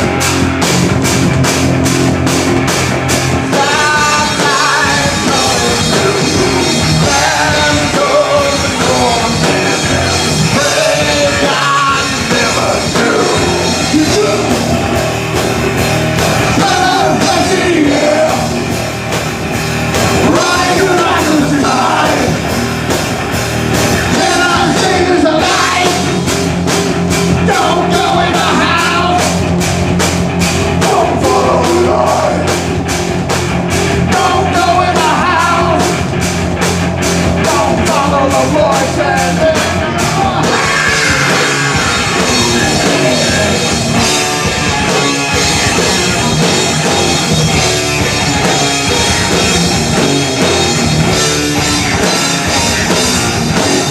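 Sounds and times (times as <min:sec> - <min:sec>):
live rock band: 0:00.0 - 0:53.9
person singing: 0:03.5 - 0:14.7, 0:16.6 - 0:18.6, 0:20.2 - 0:22.4, 0:24.1 - 0:26.2, 0:27.4 - 0:29.4, 0:30.8 - 0:32.6, 0:34.1 - 0:36.0, 0:37.4 - 0:44.3
fast beat of sharp hits: 0:39.4 - 0:53.9.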